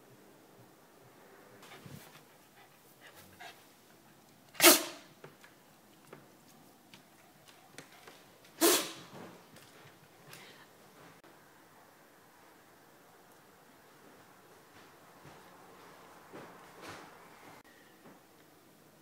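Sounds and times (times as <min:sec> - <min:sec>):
dog sneezing: 0:04.5 - 0:05.1, 0:08.6 - 0:09.1.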